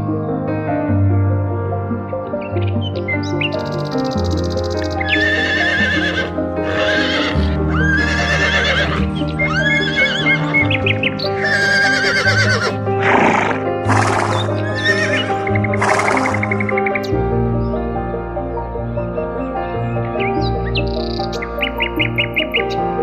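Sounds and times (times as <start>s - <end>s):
background music: 0.0s - 23.0s
horses neighing: 5.0s - 16.6s.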